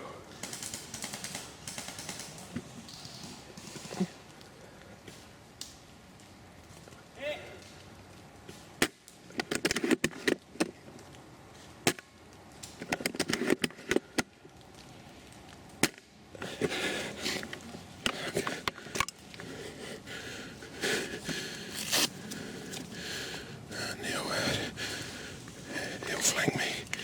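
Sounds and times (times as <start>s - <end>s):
scratchy rustling: 20.7s - 23.0s.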